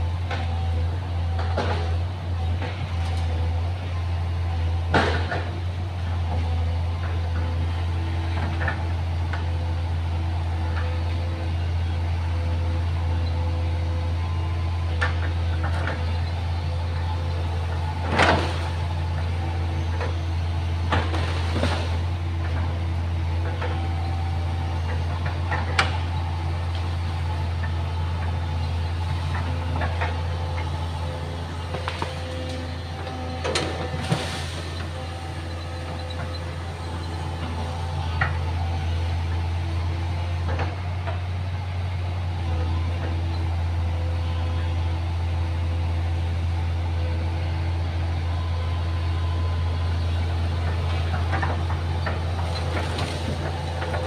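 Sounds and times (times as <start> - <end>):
excavator diesel engine running: 0.0 - 54.0
whining tones: 15.3 - 42.3.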